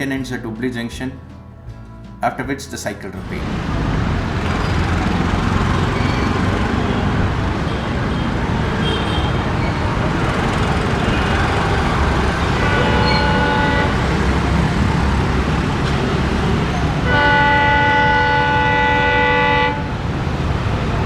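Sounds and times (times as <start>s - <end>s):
moving vehicle rumble: 1.2s - 21.0s
multi-tone horn blast: 4.4s - 20.2s
short horn toots: 7.7s - 9.8s, 11.0s - 14.4s, 17.0s - 20.0s.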